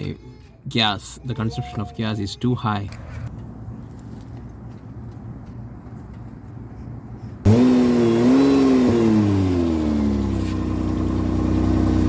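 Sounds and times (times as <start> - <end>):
car engine starting and idling: 7.4 - 12.0.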